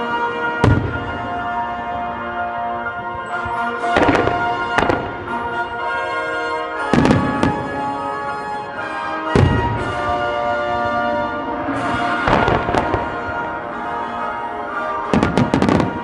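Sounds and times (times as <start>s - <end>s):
music: 0.0s - 16.0s
fireworks booming: 0.6s - 1.6s, 3.1s - 5.6s, 6.8s - 8.0s, 9.3s - 16.0s.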